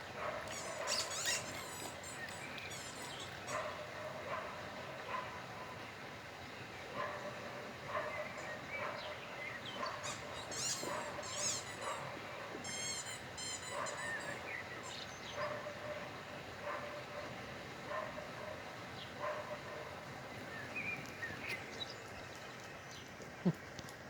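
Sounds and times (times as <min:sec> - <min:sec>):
squeaky toy squeaking: 0:00.5 - 0:01.9, 0:10.1 - 0:11.8, 0:12.7 - 0:14.3.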